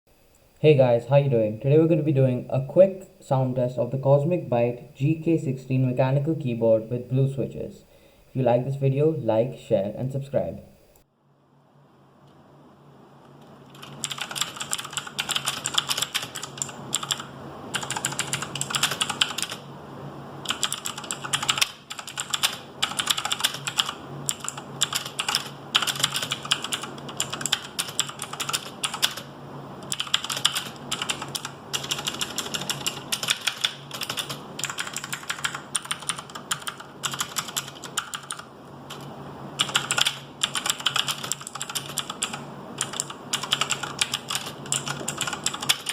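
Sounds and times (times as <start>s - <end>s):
mechanical keyboard typing: 13.7s - 19.6s, 20.4s - 45.9s.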